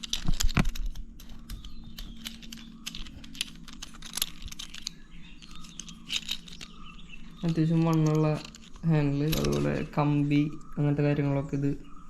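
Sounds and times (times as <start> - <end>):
plastic parts clicking and tapping: 0.0 - 10.0
faint steady hum: 0.0 - 12.0.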